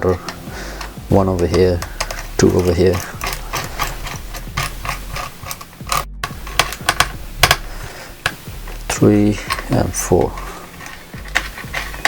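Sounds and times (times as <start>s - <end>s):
screwdriver driving screws: 0.0s - 12.0s
tool tapping on metal: 0.0s - 12.0s.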